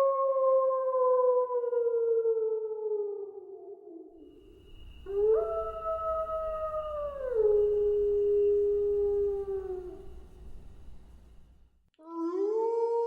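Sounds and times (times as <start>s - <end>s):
wolf howling: 4.3s - 11.3s.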